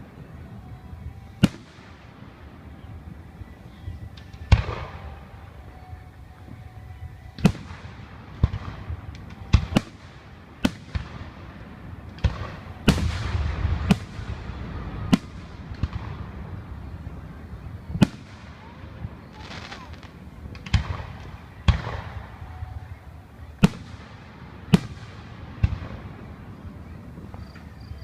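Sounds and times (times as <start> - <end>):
fireworks booming bursts: 0.0 - 28.0
crackling firework bangs: 1.4 - 2.2, 7.4 - 22.4, 23.6 - 27.8.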